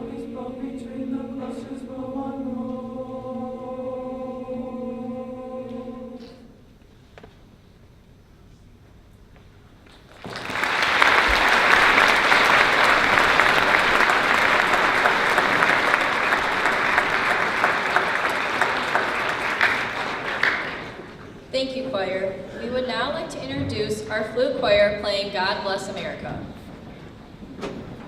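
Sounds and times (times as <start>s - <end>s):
large audience clapping: 10.0s - 21.3s.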